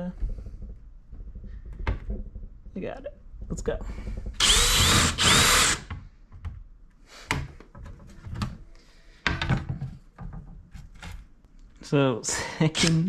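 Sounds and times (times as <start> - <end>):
power drill whining: 4.4 - 5.9.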